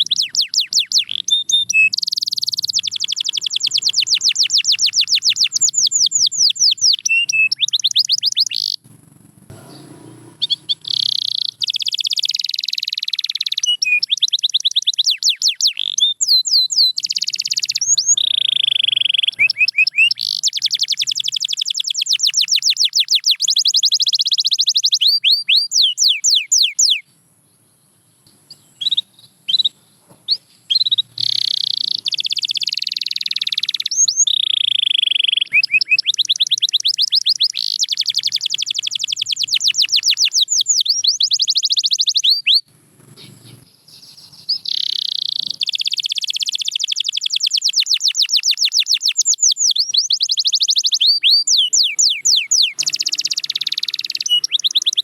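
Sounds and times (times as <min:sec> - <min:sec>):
canary singing trills: 0:00.0 - 0:55.0.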